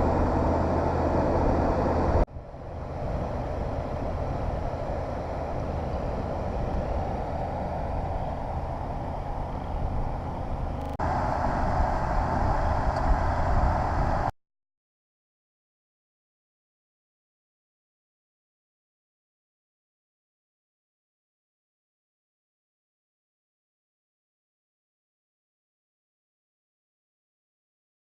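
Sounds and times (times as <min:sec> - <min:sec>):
vehicle rumble and hiss: 0:00.0 - 0:14.3.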